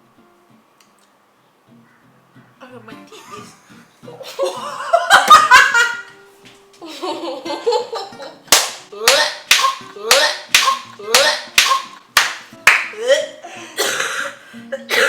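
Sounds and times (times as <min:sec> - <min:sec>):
people laughing: 0:03.1 - 0:06.1, 0:06.8 - 0:08.5
rhythmic hand smacks: 0:08.5 - 0:13.0.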